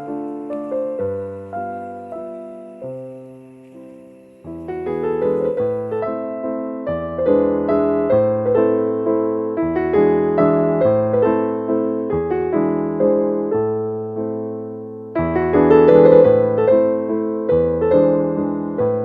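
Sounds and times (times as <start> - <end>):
solo piano playing: 0.0 - 19.0.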